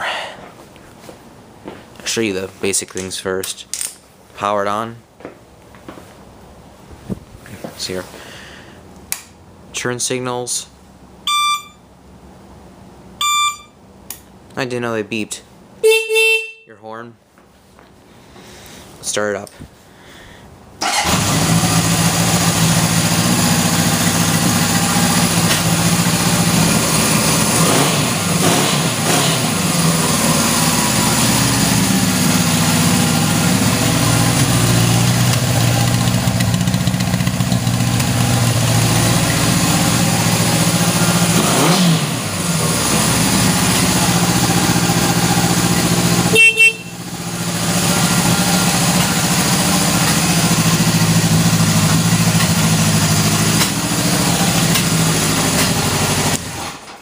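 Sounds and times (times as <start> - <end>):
engine throttle blip: 13.2 - 13.8
motorcycle engine idling: 21.0 - 27.6, 29.6 - 41.4, 42.1 - 56.3.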